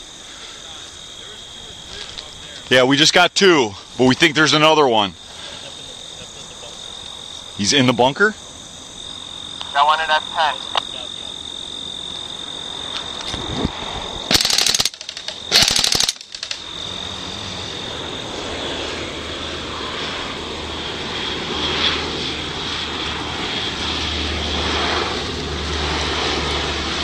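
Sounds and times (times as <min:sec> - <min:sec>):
aircraft engine rumble: 0:00.0 - 0:27.0
loud crackling bursts: 0:14.3 - 0:16.8.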